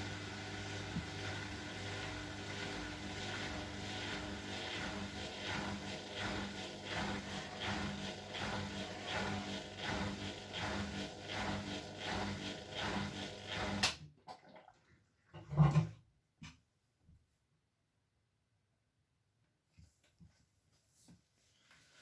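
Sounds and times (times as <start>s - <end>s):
washing machine humming: 0.0s - 14.0s.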